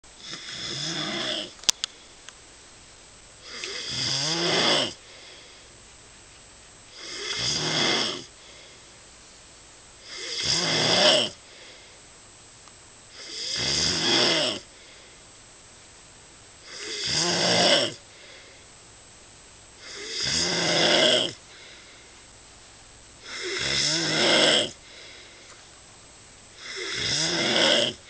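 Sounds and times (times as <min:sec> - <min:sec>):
rhythmic snoring: 0:00.2 - 0:01.6, 0:03.4 - 0:05.7, 0:06.9 - 0:08.8, 0:10.0 - 0:11.9, 0:13.1 - 0:15.0, 0:16.6 - 0:18.6, 0:19.8 - 0:22.1, 0:23.2 - 0:25.4, 0:26.6 - 0:28.0.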